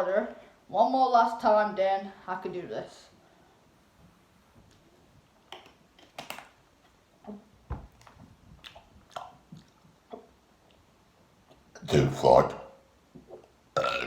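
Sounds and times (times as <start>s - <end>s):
person gulping water: 8.0s - 10.8s, 13.2s - 14.0s.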